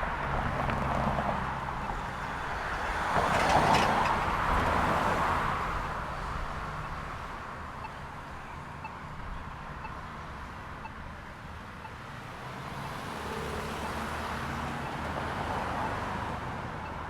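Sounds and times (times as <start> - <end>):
vehicles passing: 0.0 - 17.0.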